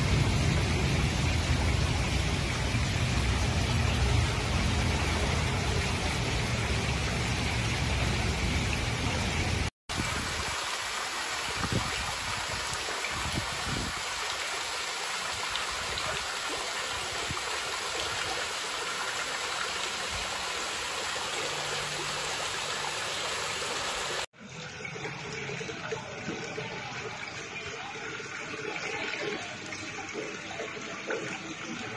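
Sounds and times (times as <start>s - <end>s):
water running: 0.0s - 31.9s.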